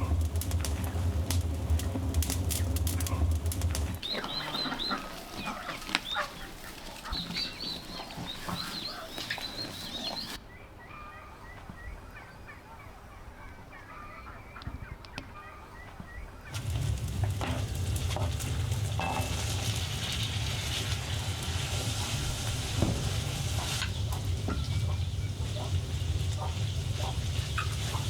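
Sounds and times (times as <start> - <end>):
machine humming and rattling: 0.0 - 4.9, 16.6 - 28.0
soft bird chirps: 0.0 - 12.7
chickens and geese calling: 0.0 - 28.0.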